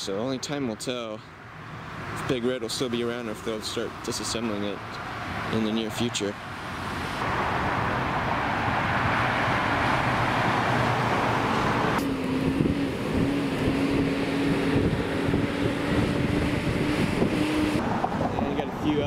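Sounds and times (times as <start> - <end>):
wind on microphone: 11.7 - 19.0.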